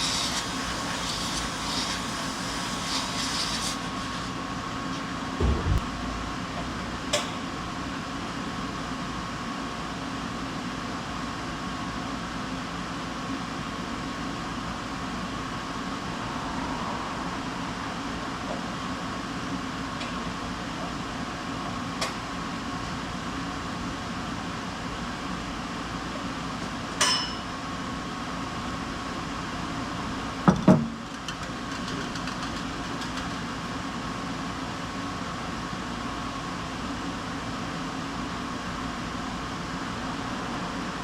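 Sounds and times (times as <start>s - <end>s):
workshop mechanical hum: 0.0s - 41.0s
sharp knocks: 5.4s - 6.2s
ringing metal clink: 27.0s - 27.5s.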